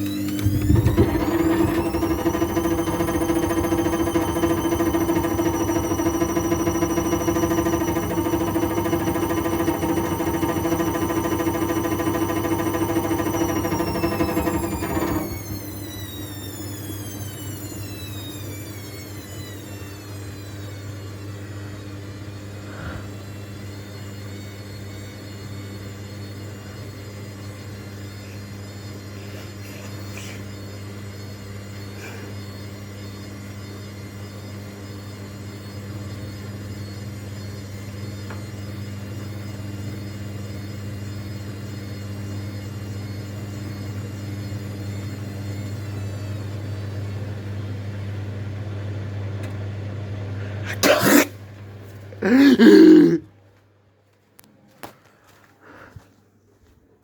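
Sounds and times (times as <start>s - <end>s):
washing machine humming: 0.0s - 21.6s
high motor whine: 0.0s - 47.2s.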